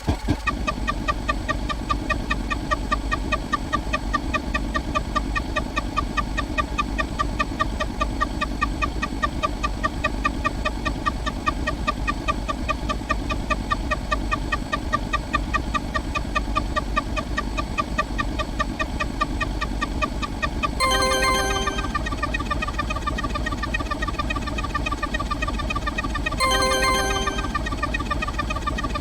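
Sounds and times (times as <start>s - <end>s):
repeated short pitched sound effect: 20.8s - 22.3s, 26.4s - 27.9s.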